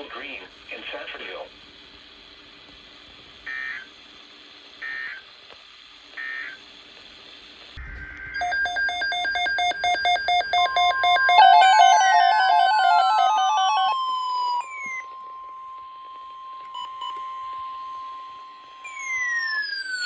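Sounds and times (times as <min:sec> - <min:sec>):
radio hum and hiss: 0:00.0 - 0:08.3
pulsing electronic tones: 0:07.8 - 0:15.1
digital data bursts: 0:08.3 - 0:14.8.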